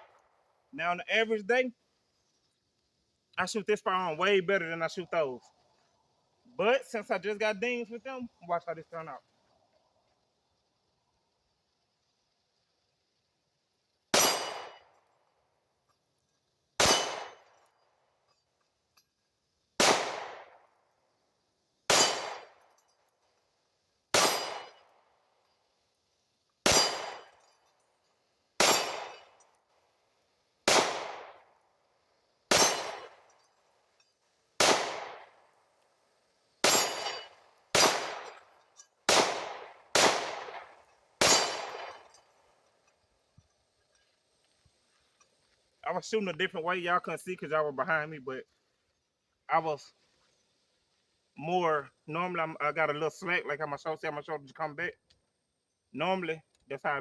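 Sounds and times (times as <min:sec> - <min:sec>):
pistol shots: 0:14.1 - 0:14.8, 0:16.8 - 0:17.5, 0:19.8 - 0:20.6, 0:21.9 - 0:22.6, 0:24.1 - 0:24.9, 0:26.6 - 0:27.4, 0:28.6 - 0:29.4, 0:30.7 - 0:31.4, 0:32.5 - 0:33.2, 0:34.6 - 0:35.4, 0:36.6 - 0:38.4, 0:39.1 - 0:42.2.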